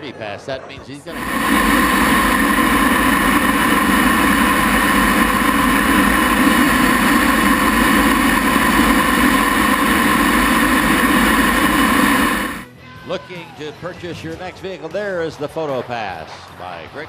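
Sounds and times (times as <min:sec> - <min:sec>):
jet engine running: 0:01.1 - 0:12.7.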